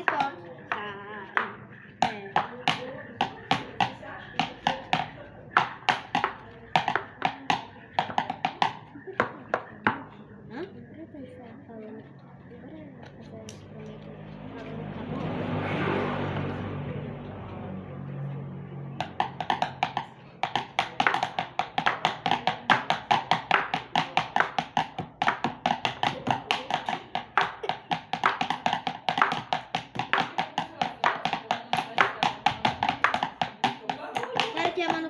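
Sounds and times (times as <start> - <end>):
rapid tapping on household objects: 0.0 - 10.1, 19.0 - 35.0.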